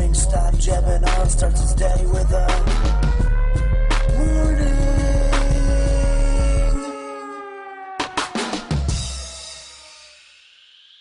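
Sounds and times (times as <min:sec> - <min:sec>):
person rapping: 0:00.0 - 0:06.9
hip-hop beat with heavy bass: 0:00.0 - 0:10.8.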